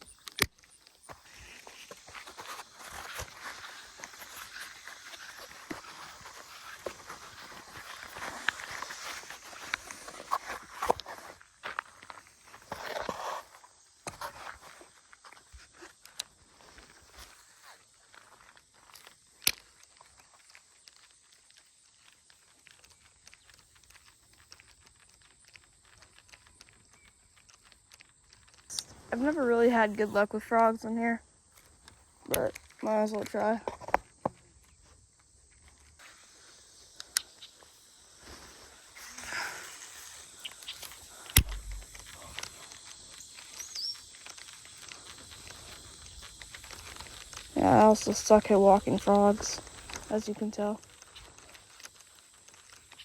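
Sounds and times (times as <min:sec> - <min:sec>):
light ticks and rustles: 0:00.0 - 0:53.0
outdoor background: 0:00.0 - 0:53.0
faint high whine: 0:34.1 - 0:50.8
sharp click: 0:40.7 - 0:42.5.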